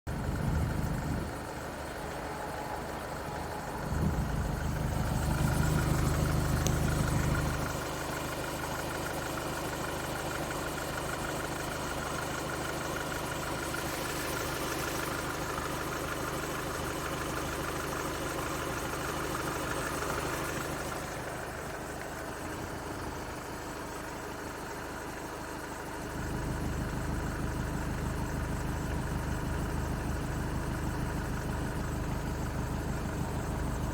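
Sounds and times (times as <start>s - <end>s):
strange belt noise: 0.1s - 9.6s
diesel engine idling: 0.1s - 33.9s.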